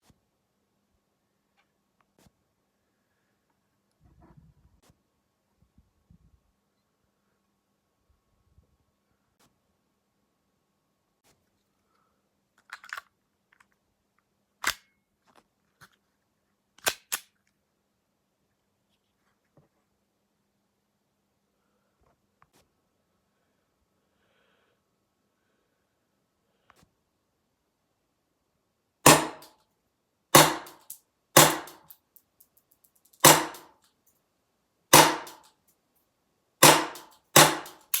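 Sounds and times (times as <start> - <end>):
pistol clicks: 16.8 - 17.4, 29.1 - 29.5, 30.4 - 33.7, 35.0 - 35.5, 36.6 - 38.0
airsoft pistol shots: 29.1 - 29.5, 30.4 - 31.9, 33.2 - 33.7, 34.9 - 35.4, 36.6 - 38.0.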